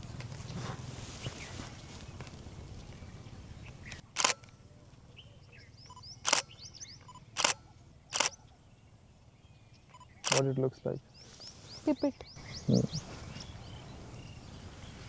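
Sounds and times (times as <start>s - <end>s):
camera shutter firing: 4.2s - 4.5s, 6.2s - 6.6s, 7.4s - 8.4s, 10.2s - 10.5s
faint bird chirps: 5.1s - 15.0s.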